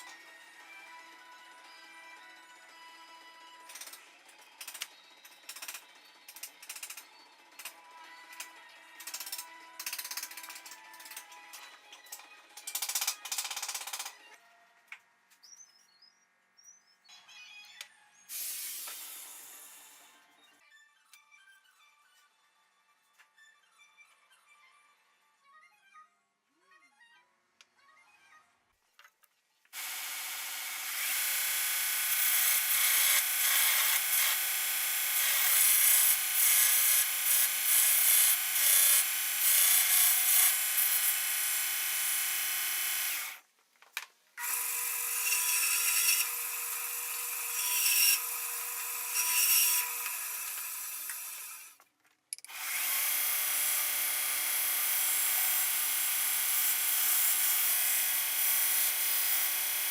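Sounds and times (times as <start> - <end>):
power tool motor hum: 29.8 - 43.4, 52.5 - 59.9.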